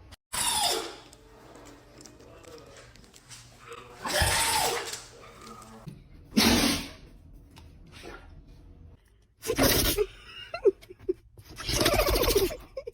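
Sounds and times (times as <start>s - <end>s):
dog sneezing: 6.4s - 7.0s.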